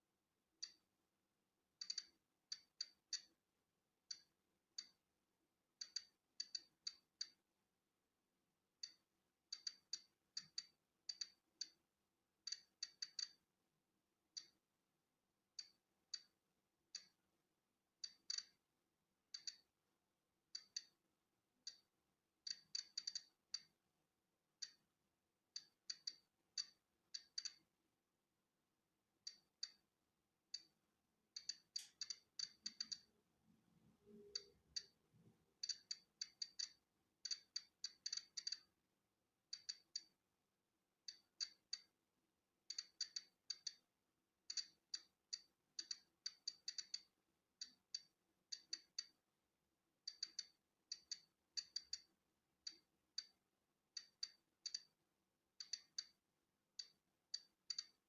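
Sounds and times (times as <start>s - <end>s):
geiger counter clicking: 0.6s - 0.8s, 1.8s - 3.4s, 5.8s - 7.4s, 8.8s - 11.8s, 12.4s - 13.4s, 14.4s - 14.6s, 15.6s - 16.4s, 17.0s - 17.2s, 18.0s - 18.6s, 19.4s - 19.7s, 20.5s - 21.0s, 21.6s - 23.8s, 24.6s - 24.8s, 25.5s - 27.7s, 29.3s - 29.9s, 30.5s - 33.1s, 34.0s - 35.0s, 35.6s - 38.7s, 39.5s - 40.2s, 41.0s - 41.9s, 42.7s - 43.8s, 44.5s - 49.2s, 50.0s - 53.4s, 54.0s - 55.0s, 55.6s - 56.2s, 56.8s - 58.0s.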